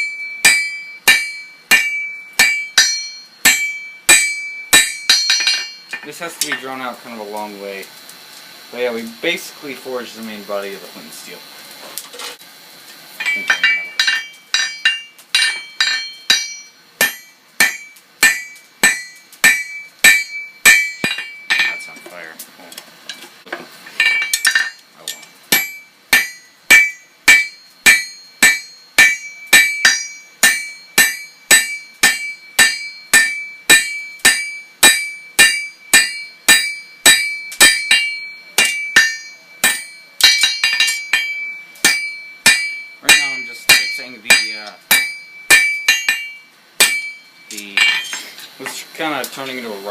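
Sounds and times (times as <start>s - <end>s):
hammer striking steel on anvil: 0.0s - 6.7s, 13.2s - 22.2s, 24.0s - 48.8s.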